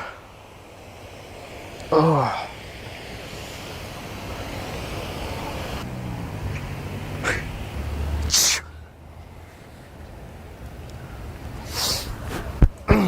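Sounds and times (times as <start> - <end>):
steady background noise: 0.0 - 13.0
person sneezing: 7.2 - 7.5, 8.3 - 8.7, 11.7 - 13.0.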